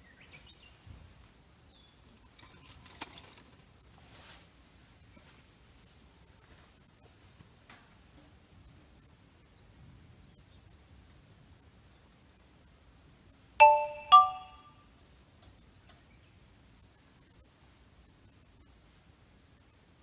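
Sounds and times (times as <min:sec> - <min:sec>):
faint high-pitched tone: 0:13.6 - 0:14.8.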